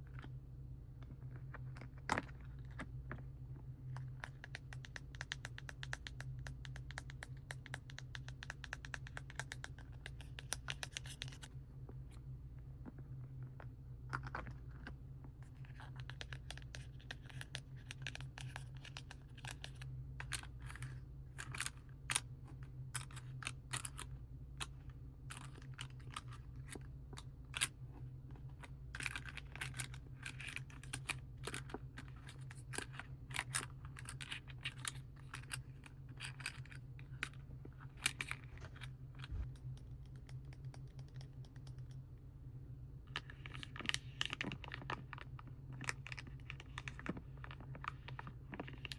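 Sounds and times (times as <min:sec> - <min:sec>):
low electrical hum: 0:00.0 - 0:48.9
scratching and tapping on packaging: 0:04.0 - 0:11.5.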